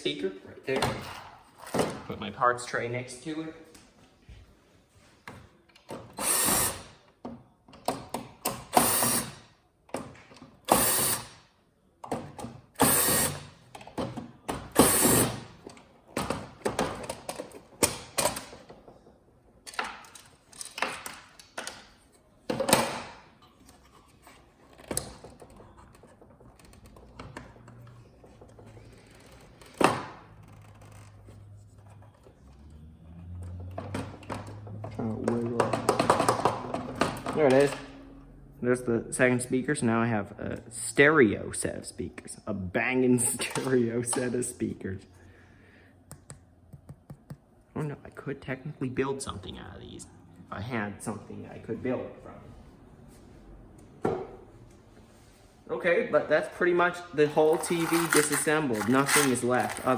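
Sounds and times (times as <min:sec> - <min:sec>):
plastic and metal parts clattering: 0:57.4 - 0:59.9.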